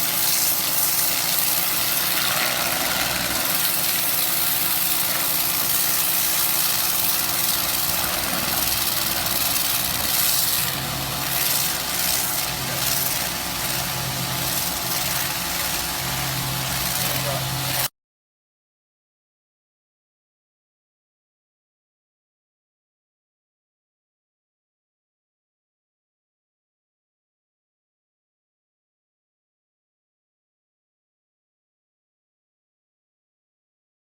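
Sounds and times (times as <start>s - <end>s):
pressure washer running: 0.0s - 17.9s.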